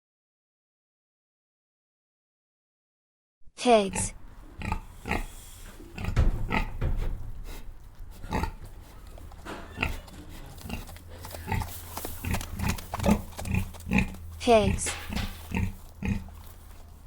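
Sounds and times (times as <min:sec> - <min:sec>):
pigs grunting: 0:03.9 - 0:17.0.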